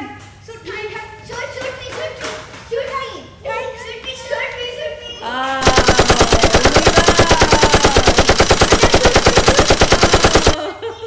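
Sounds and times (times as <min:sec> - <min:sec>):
toy gun rapid-fire sound effect: 0:05.6 - 0:10.6.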